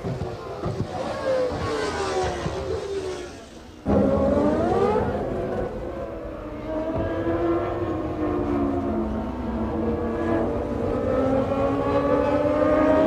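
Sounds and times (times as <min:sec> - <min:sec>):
racing car engines revving: 0:00.0 - 0:13.0.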